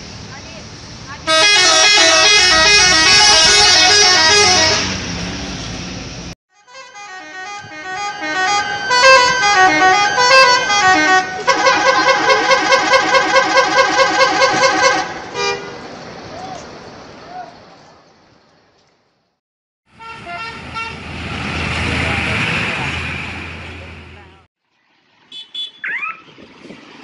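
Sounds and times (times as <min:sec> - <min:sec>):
musical bus horns: 0:01.2 - 0:05.3, 0:06.5 - 0:15.9, 0:19.9 - 0:21.1.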